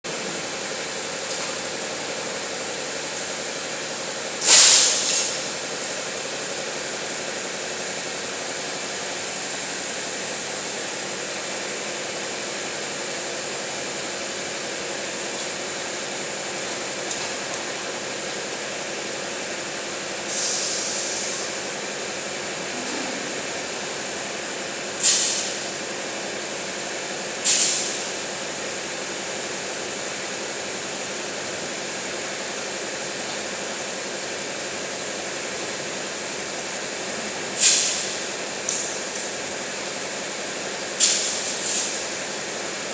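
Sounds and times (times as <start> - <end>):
industrial machinery hissing: 4.0 - 6.2, 19.6 - 26.0, 27.2 - 28.4, 37.0 - 39.2, 41.0 - 42.4
loud hissing bursts: 4.4 - 5.5, 20.2 - 21.6.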